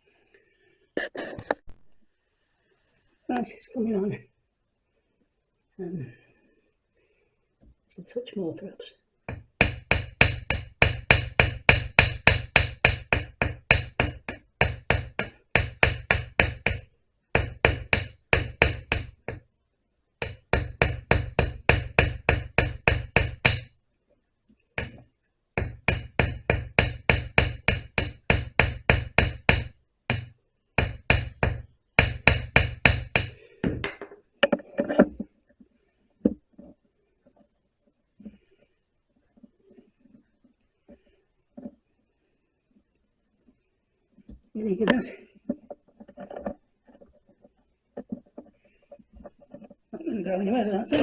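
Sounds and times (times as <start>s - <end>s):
hammer tapping on metal: 9.3s - 19.4s, 20.2s - 23.7s, 24.8s - 25.0s, 25.6s - 34.6s.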